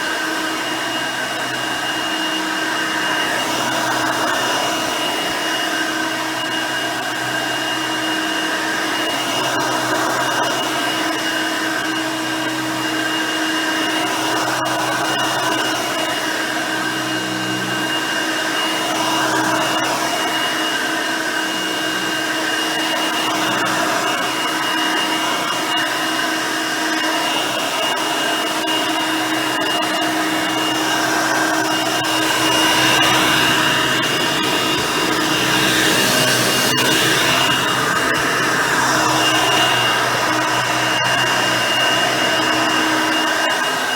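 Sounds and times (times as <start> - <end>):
vacuum cleaner motor whine: 0.0 - 43.9.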